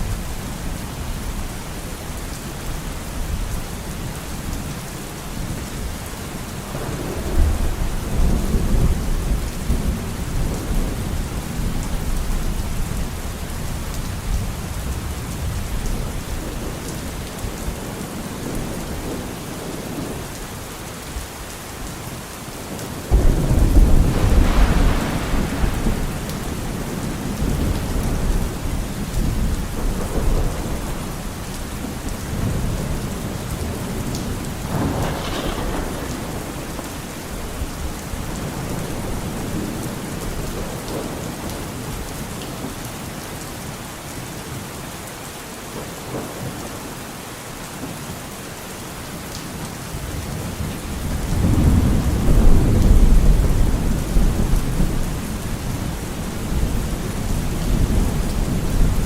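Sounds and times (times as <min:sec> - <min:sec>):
heavy rain falling: 0:00.0 - 0:59.0
thunder rumbling: 0:06.6 - 0:20.2, 0:22.8 - 0:42.0, 0:50.4 - 0:59.0.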